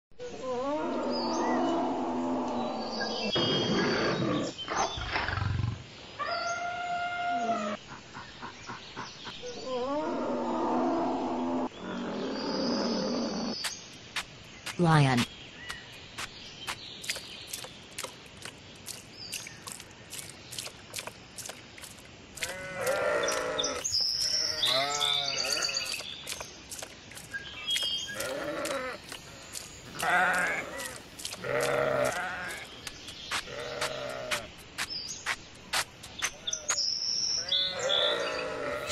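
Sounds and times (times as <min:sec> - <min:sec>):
farm animal bleating: 0:22.4 - 0:25.9, 0:29.9 - 0:32.7, 0:33.5 - 0:34.5.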